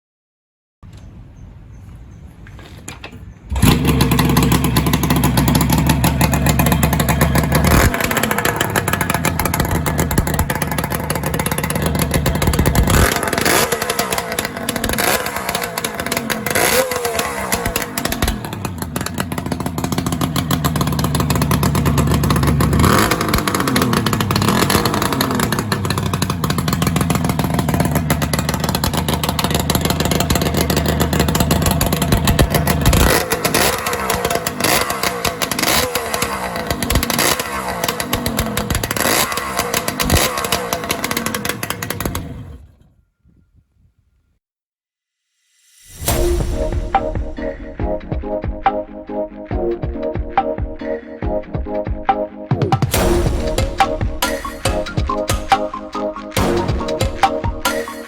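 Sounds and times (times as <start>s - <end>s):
two-stroke engine revving: 3.5s - 42.9s, 52.8s - 58.0s.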